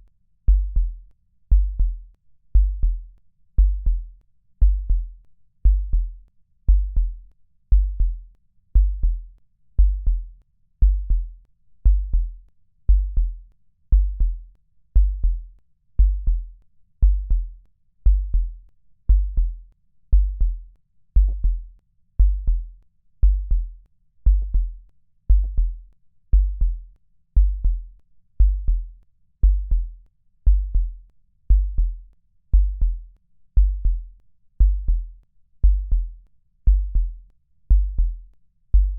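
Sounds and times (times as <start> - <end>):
electronic double kick-drum thump: 23.2 - 23.6, 24.3 - 24.7, 27.4 - 27.8, 28.4 - 28.8, 30.5 - 30.9, 31.5 - 31.9, 32.6 - 33.0, 33.6 - 34.0, 34.6 - 35.0, 35.6 - 36.1, 36.7 - 37.1, 37.7 - 38.2.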